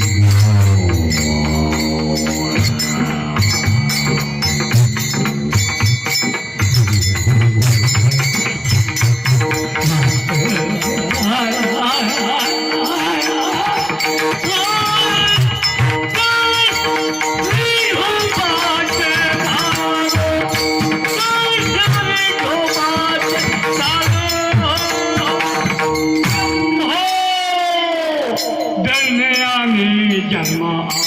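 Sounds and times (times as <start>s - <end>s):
drum: 0.0s - 27.1s
hand cymbals jingling: 0.0s - 31.0s
sustained melodic tones: 0.0s - 31.0s.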